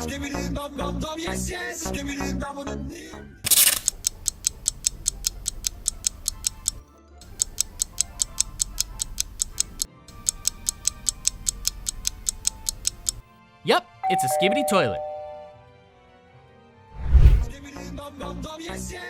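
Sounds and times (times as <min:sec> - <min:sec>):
clock-like timer ticking: 0:03.8 - 0:13.2.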